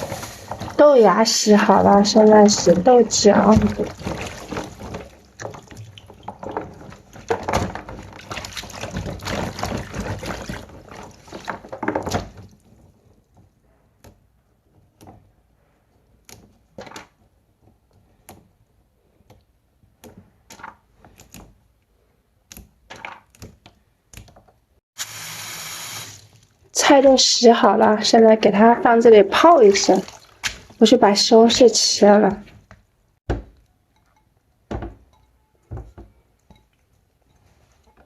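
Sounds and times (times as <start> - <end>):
tap water running: 0.0 - 12.8, 25.0 - 26.7.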